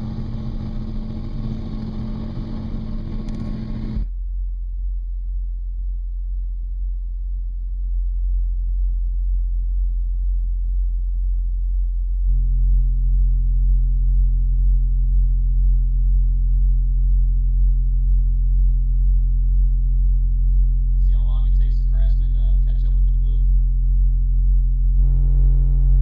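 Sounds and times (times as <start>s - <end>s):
subwoofer deep bass tone: 0.0s - 26.0s.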